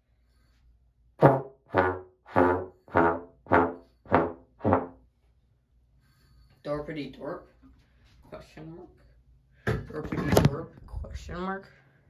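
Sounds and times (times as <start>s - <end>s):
trombone short notes: 1.2s - 5.0s.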